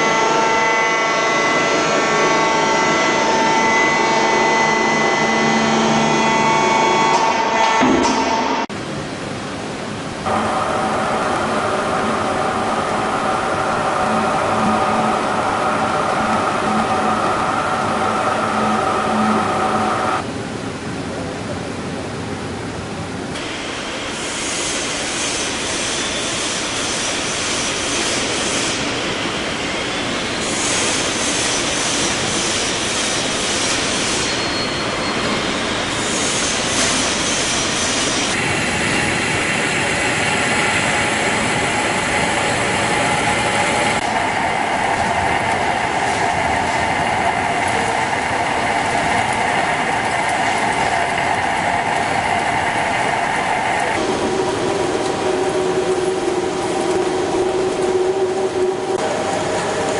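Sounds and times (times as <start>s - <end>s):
machinery grinding and screeching: 10.3s - 20.2s.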